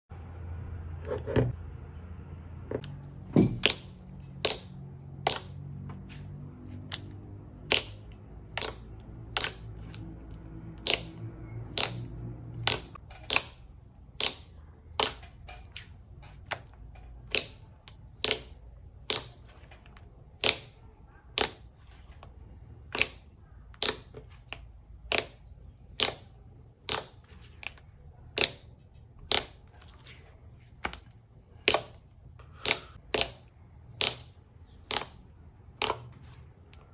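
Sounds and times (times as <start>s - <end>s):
slime clicking pops: 3.6s - 5.5s, 7.7s - 10.0s, 10.8s - 12.0s, 17.3s - 19.4s, 20.4s - 20.7s, 25.0s - 25.4s, 26.0s - 27.2s, 32.6s - 35.2s.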